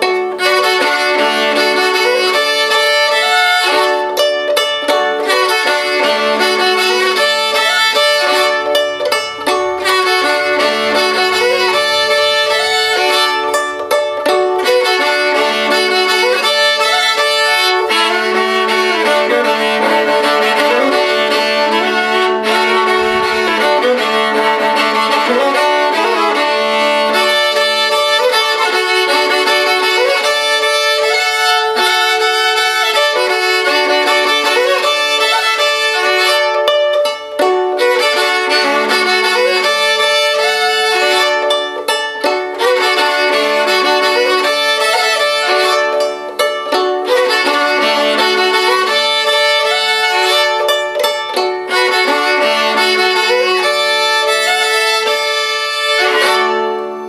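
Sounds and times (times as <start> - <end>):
bowed viola melody over drone: 0.0 - 57.0.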